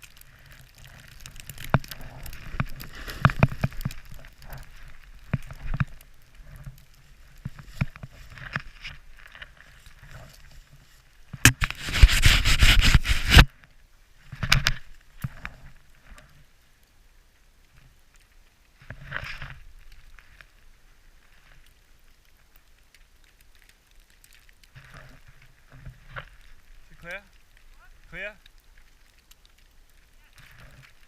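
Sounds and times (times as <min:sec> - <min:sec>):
skis scraping through snow: 0:00.0 - 0:13.5.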